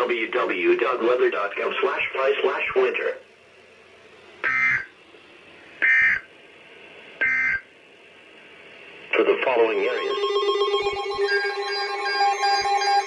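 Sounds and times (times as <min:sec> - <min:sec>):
digital warbling data tones: 0:09.7 - 0:13.0.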